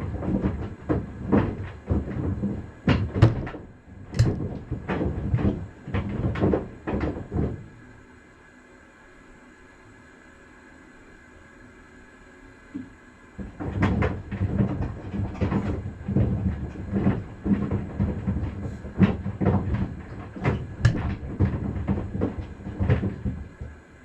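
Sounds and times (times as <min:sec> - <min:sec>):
knocks and thuds in drum: 0:00.0 - 0:07.8, 0:13.4 - 0:23.8
washing machine motor: 0:00.0 - 0:08.2, 0:12.7 - 0:24.0.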